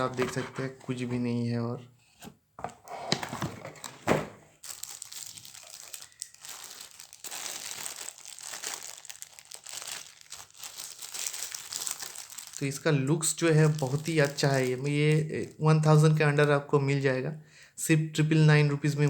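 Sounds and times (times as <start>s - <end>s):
wrapping crinkling and rustling: 4.6s - 16.5s.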